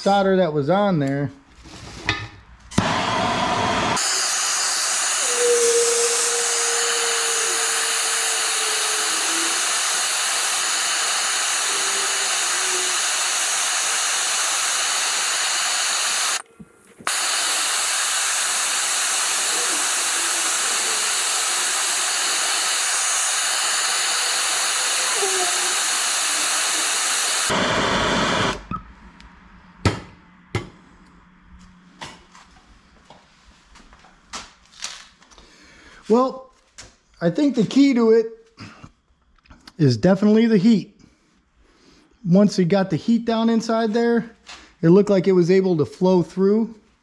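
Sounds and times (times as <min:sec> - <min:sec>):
gas torch flame hissing: 0:02.8 - 0:28.7.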